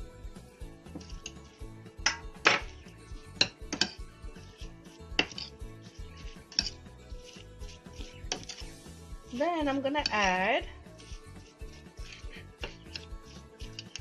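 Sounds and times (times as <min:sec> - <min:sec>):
background music: 0:00.0 - 0:14.0
spoon scraping mixing bowl: 0:00.9 - 0:14.0.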